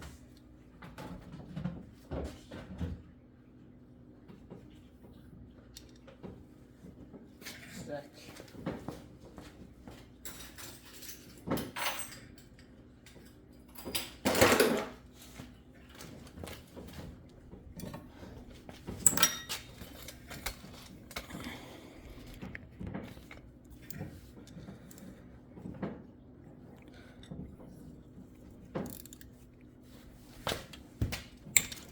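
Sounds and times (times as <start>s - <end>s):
metal tools clinking and scraping: 10.2s - 15.0s, 17.3s - 21.5s, 27.2s - 29.6s, 31.5s - 31.9s.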